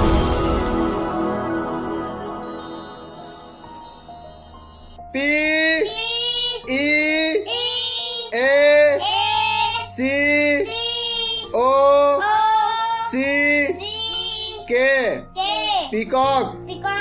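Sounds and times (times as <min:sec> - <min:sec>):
steady low backing note: 0:00.0 - 0:05.0
soft electronic music: 0:00.0 - 0:05.1
child singing: 0:05.8 - 0:06.7, 0:07.4 - 0:10.0, 0:10.6 - 0:13.2.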